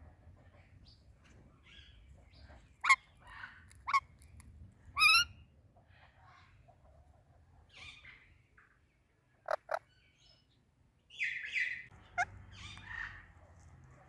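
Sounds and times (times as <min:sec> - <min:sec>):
parakeet chirps: 0:05.0 - 0:05.3
parakeets squawking: 0:12.0 - 0:13.2.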